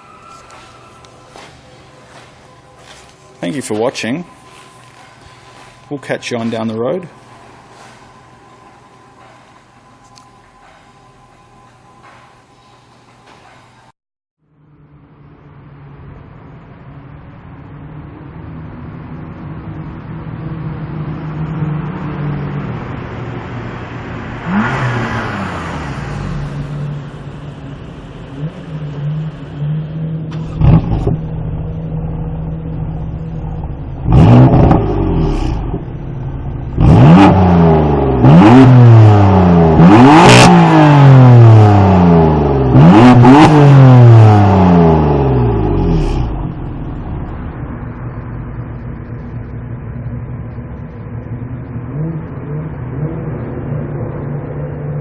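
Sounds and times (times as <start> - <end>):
car engine idling: 0.0 - 12.5, 14.6 - 55.0
car engine revving hard: 20.9 - 48.2, 51.7 - 55.0.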